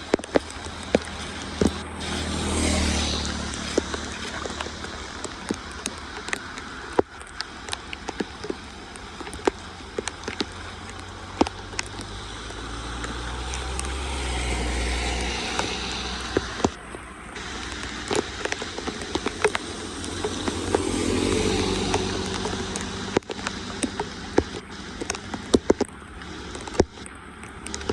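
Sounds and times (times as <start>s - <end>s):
floodwater draining: 0.0s - 27.9s
sharp ticks and splashes: 0.0s - 27.9s.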